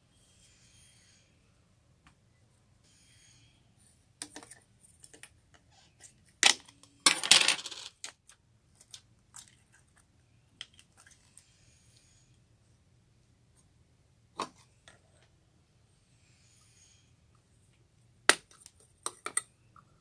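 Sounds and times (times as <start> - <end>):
small hard items clattering: 6.4 - 8.2.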